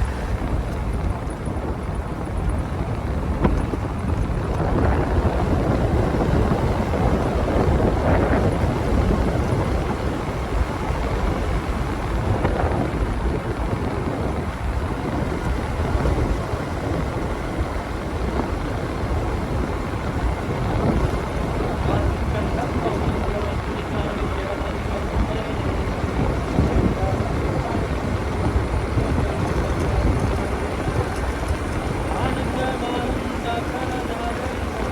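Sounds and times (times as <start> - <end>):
motorbike engine: 0.0 - 34.9
road noise: 0.0 - 34.9
wind rushing over microphone: 0.0 - 34.9.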